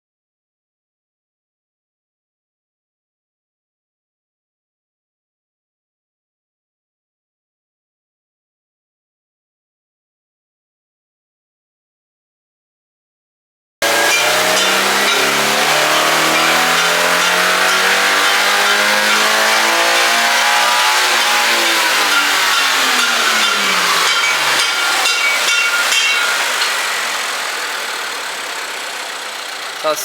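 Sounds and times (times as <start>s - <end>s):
car engine revving: 13.8s - 30.0s.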